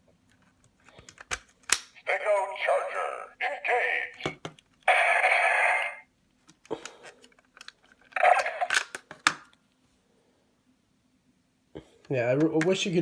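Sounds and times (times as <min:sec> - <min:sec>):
toy sound effect through speaker: 0:02.0 - 0:06.1, 0:08.2 - 0:08.8.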